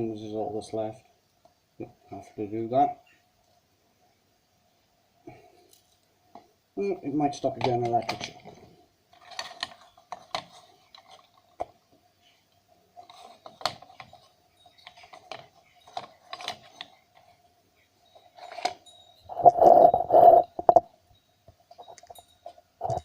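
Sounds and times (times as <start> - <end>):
faint steady hum: 0.0 - 23.0
noisy bursts: 19.3 - 20.8.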